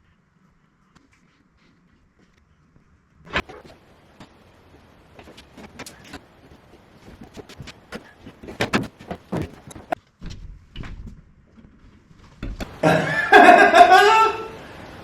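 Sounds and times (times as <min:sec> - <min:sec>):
sharp clicks and knocks: 0:05.1 - 0:11.2
man laughing: 0:12.7 - 0:15.0.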